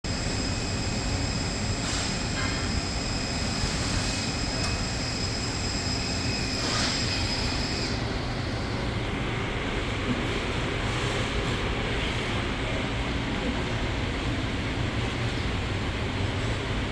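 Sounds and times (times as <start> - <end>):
thin high whine: 0.1 - 9.0
machine mechanical hum: 0.1 - 16.9.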